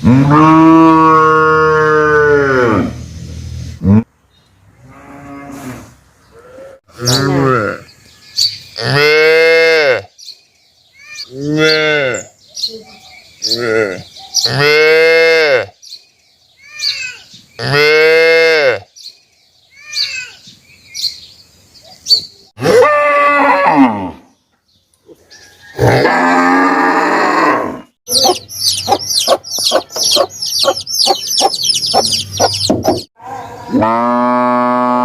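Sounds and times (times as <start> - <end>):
cattle mooing: 4.8 - 7.8.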